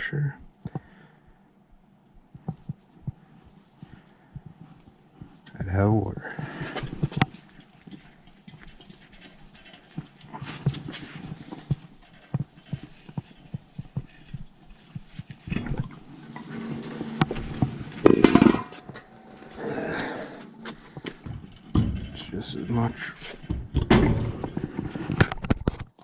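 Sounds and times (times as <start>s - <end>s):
tools clicking and knocking on pipes: 6.4s - 25.8s
clattering burst: 15.6s - 25.2s.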